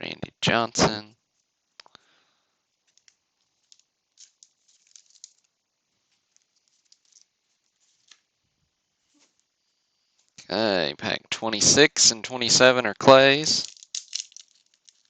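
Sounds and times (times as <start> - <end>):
cards clicking and rustling: 2.8 - 5.5, 6.1 - 8.3, 13.4 - 15.0.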